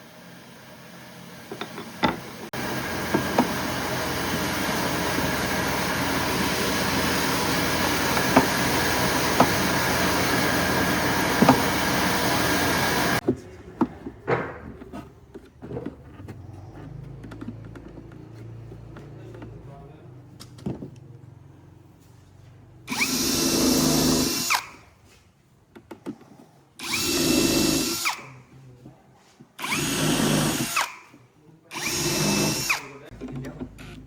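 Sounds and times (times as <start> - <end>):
power tool cutting wood: 1.5 - 13.2, 22.9 - 24.8, 26.8 - 28.4, 29.6 - 31.1, 31.7 - 33.1.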